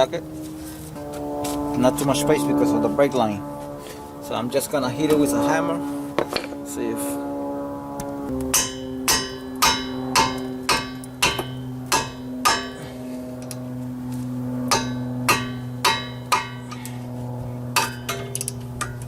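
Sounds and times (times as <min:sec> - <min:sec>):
steady low hum: 0:00.0 - 0:19.0
hammer striking metal: 0:08.5 - 0:12.8, 0:14.7 - 0:16.8, 0:17.8 - 0:19.0.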